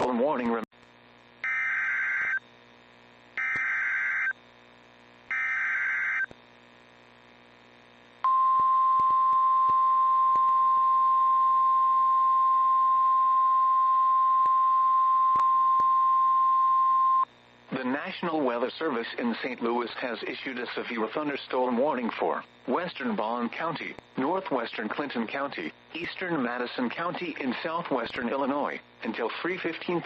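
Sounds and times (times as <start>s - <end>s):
steady warning alarm tone: 1.4s - 2.4s, 3.4s - 4.3s, 5.3s - 6.3s.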